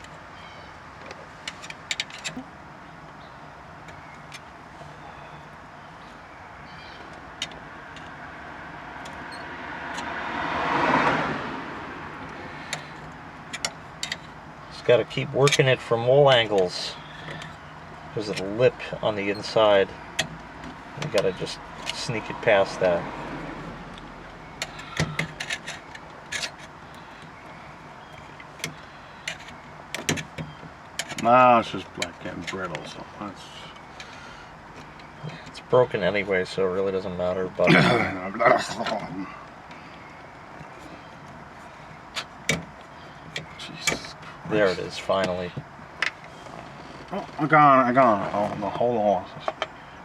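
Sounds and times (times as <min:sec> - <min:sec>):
car driving past: 0:07.8 - 0:13.3, 0:20.9 - 0:25.8.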